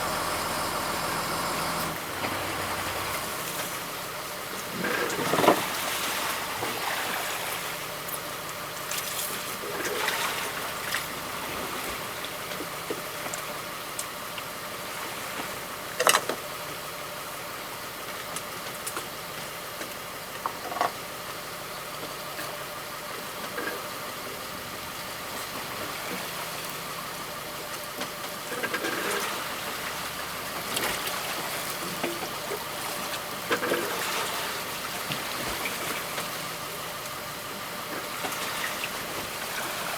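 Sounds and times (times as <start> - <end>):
boat engine running: 0.0 - 7.8.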